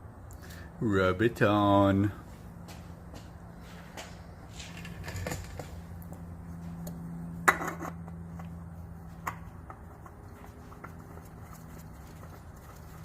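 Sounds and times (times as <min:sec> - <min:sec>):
steady low hum: 0:00.0 - 0:13.0
metal tools clinking: 0:04.5 - 0:05.8.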